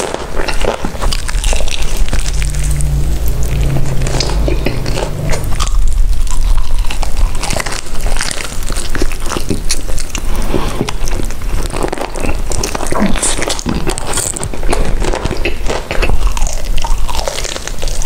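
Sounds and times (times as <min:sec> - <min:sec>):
crunchy food chewing: 0:00.0 - 0:18.0.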